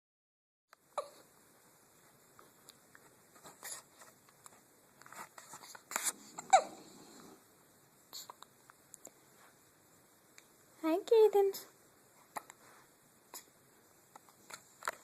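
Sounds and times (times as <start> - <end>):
baby hiccuping: 6.4 - 6.8.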